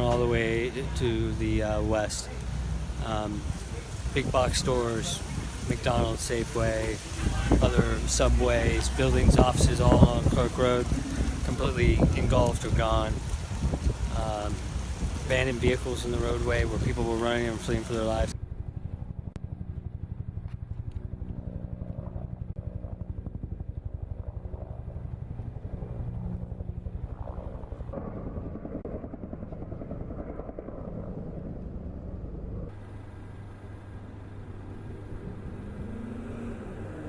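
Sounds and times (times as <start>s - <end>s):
pulsing motor noise: 17.8s - 37.0s.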